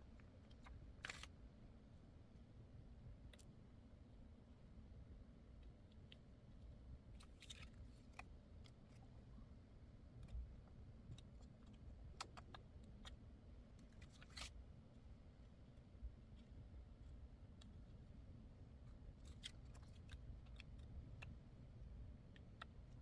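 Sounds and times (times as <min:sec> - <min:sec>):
low background hum: 0:00.0 - 0:23.0
small clicks and taps: 0:10.2 - 0:13.2.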